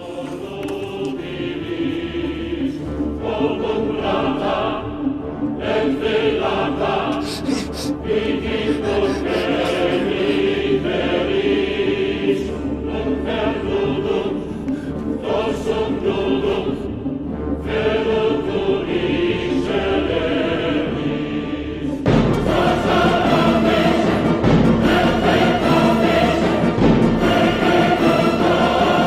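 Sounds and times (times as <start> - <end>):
choir singing held chords: 0.0 - 29.0.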